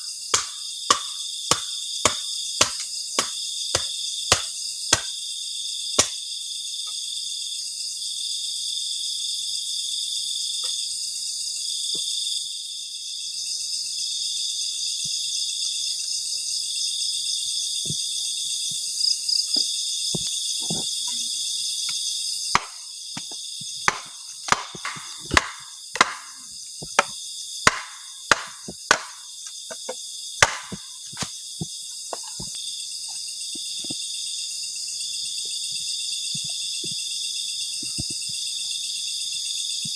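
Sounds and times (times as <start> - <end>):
crickets and insects chirping: 0.0 - 39.9
sharp knocks: 22.6 - 27.1, 27.7 - 30.8.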